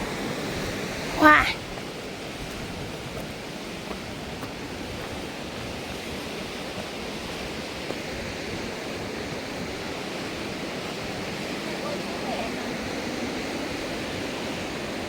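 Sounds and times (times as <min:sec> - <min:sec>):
steady rushing outdoor noise: 0:00.0 - 0:15.0.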